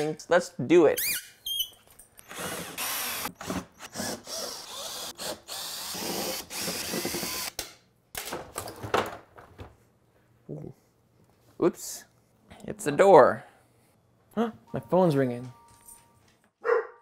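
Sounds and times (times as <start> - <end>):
power drill whining: 2.2 - 7.5.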